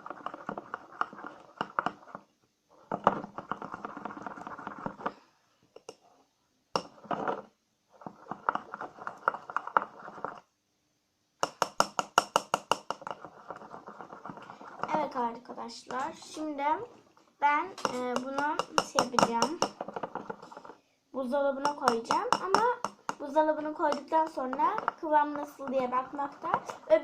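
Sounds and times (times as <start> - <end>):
spoon stirring in a bowl: 0.0 - 2.2, 6.8 - 10.5, 11.4 - 20.8, 21.6 - 27.0.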